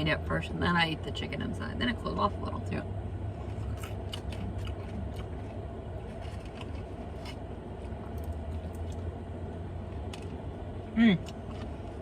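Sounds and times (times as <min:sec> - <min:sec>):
steady low hum: 0:00.0 - 0:12.0
crunchy chewing clicks: 0:03.4 - 0:09.1.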